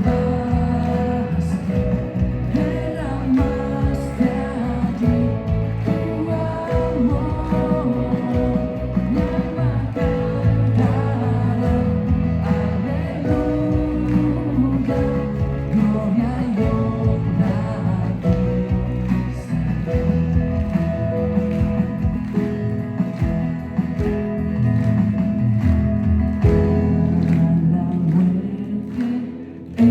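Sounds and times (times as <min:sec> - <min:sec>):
person singing: 0:00.0 - 0:20.3, 0:26.4 - 0:29.9
drums beating: 0:00.0 - 0:28.4
live worship band playing: 0:00.0 - 0:29.9.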